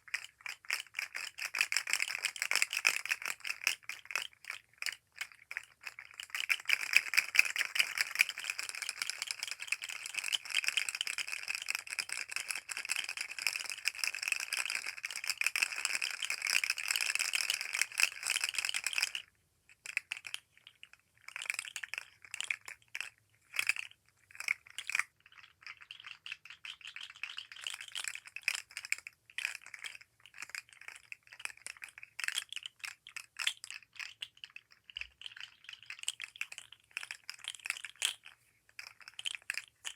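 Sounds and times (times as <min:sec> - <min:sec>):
toy segments rattling: 0:23.5 - 0:39.9.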